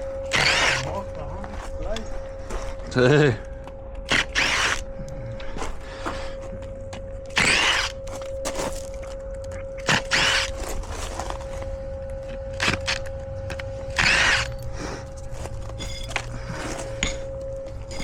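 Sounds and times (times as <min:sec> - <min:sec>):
steady hum: 0:00.0 - 0:18.0
metal stakes scraping and clanking: 0:07.3 - 0:09.0, 0:09.8 - 0:11.6, 0:13.9 - 0:18.0.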